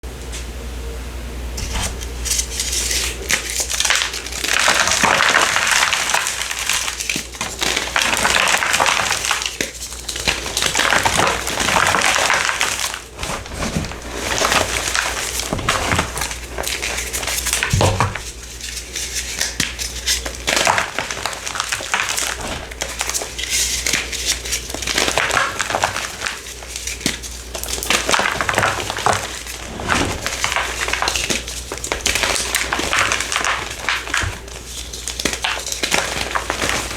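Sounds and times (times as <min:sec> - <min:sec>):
block crunching: 0:03.3 - 0:18.4.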